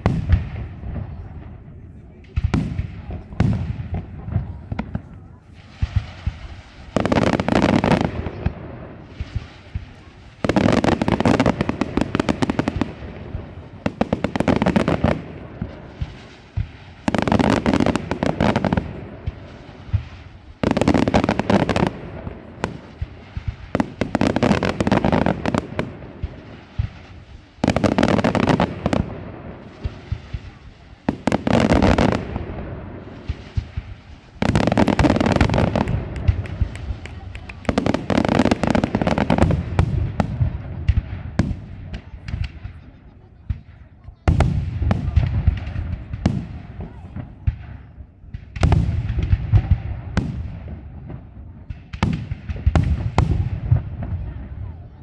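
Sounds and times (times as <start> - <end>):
fireworks bangs and crackling: 0.0 - 55.0.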